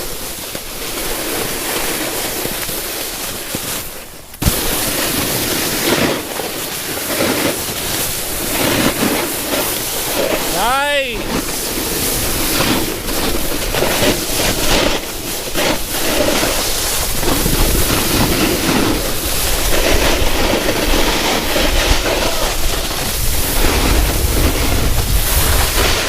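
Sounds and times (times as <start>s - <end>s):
snowboard scraping over icy snow: 0.1s - 10.6s, 11.2s - 26.0s
wind rumbling on microphone: 21.7s - 26.0s.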